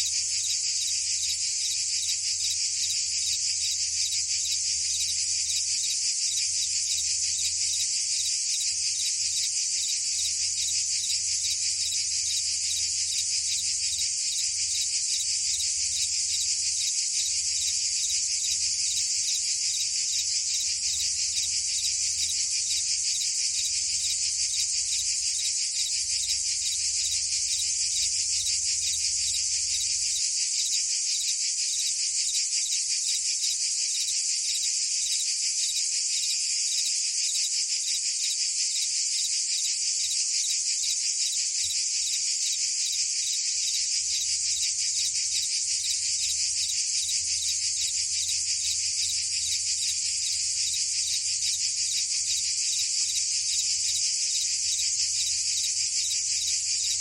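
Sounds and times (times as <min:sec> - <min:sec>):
cicadas and crickets buzzing: 0:00.0 - 0:57.0.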